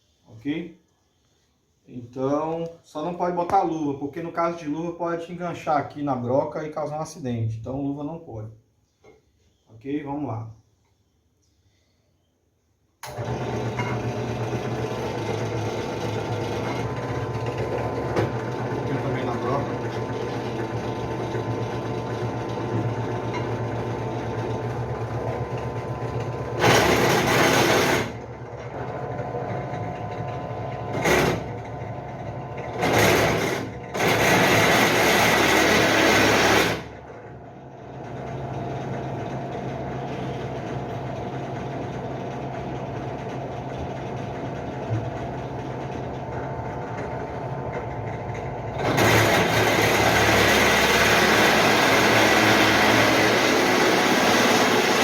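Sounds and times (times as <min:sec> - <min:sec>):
drill press motor humming: 0:13.0 - 0:55.0
drill bit grinding into steel: 0:26.6 - 0:28.2, 0:32.7 - 0:36.9, 0:48.8 - 0:55.0.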